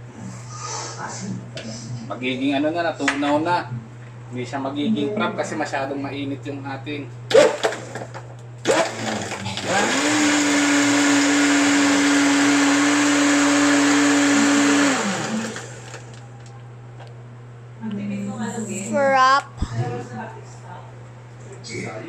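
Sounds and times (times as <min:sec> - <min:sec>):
electric blender motor: 0:08.6 - 0:16.2.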